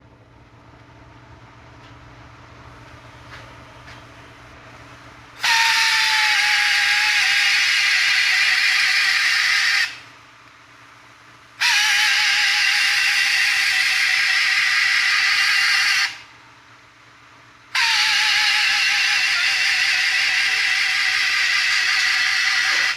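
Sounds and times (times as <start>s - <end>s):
power tool hissing and whining: 5.4s - 10.1s, 11.6s - 16.3s, 17.8s - 22.9s.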